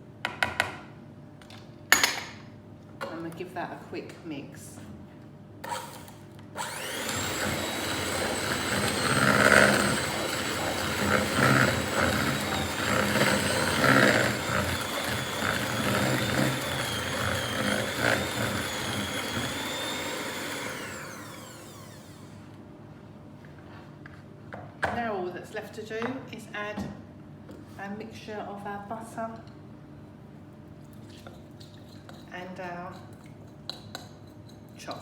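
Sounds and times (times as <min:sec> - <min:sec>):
electric mixer motor whining: 0:05.7 - 0:22.4
mixer rattling in bowl: 0:06.7 - 0:21.8.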